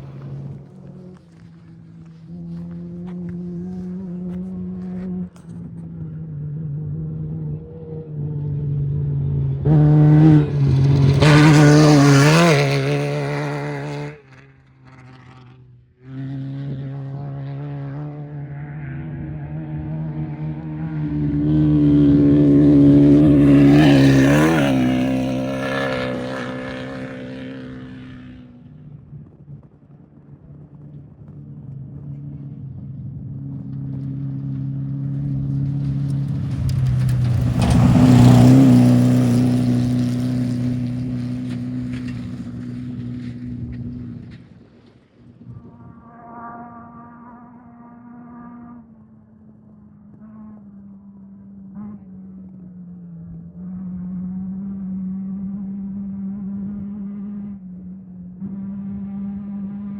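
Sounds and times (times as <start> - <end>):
race vehicles driving past: 0.0 - 59.9
steady engine drone: 0.0 - 59.9.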